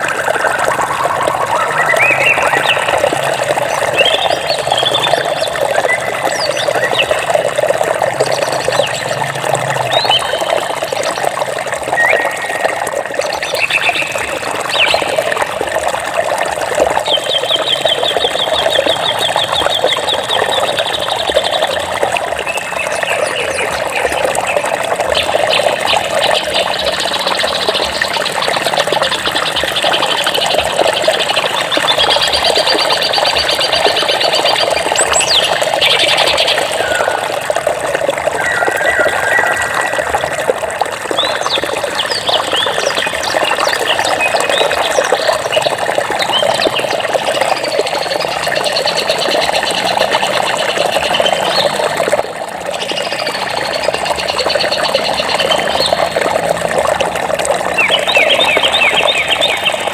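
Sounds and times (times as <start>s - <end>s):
running water rushing: 0.0s - 59.9s
small birds chirping: 0.8s - 7.7s.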